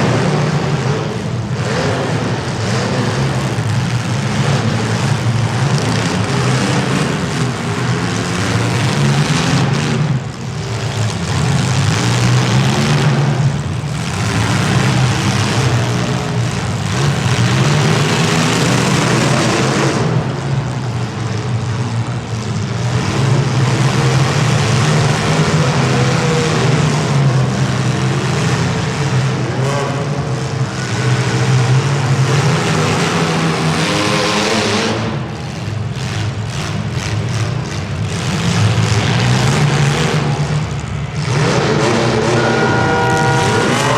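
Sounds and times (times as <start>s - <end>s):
car engines revving: 0.0s - 43.9s
steady low drone: 40.5s - 43.9s.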